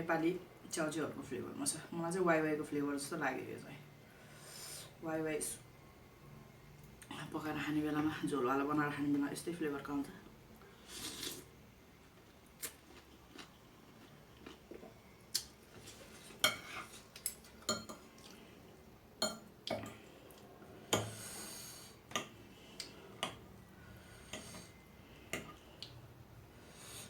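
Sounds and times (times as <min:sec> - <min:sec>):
slurping: 0:10.8 - 0:11.5.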